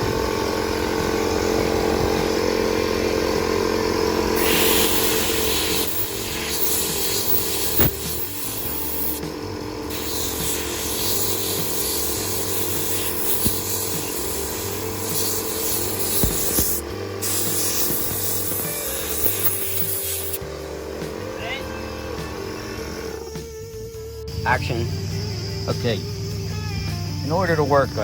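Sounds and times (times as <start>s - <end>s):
low pulsing hum: 0.0s - 27.6s
spraying hiss: 4.3s - 21.2s.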